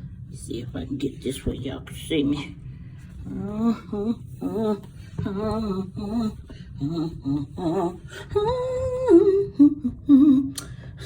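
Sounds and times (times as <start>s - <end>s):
woman humming: 3.2s - 10.9s.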